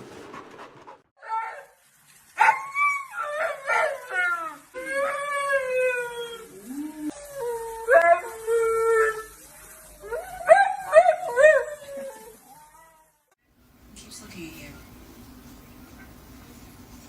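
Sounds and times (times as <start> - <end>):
dog yelping: 2.4 - 4.0
dog howling and whining: 2.4 - 13.2.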